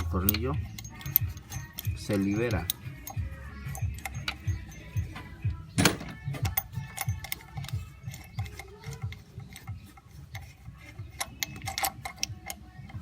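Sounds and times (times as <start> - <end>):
metal knock: 5.1 - 6.6.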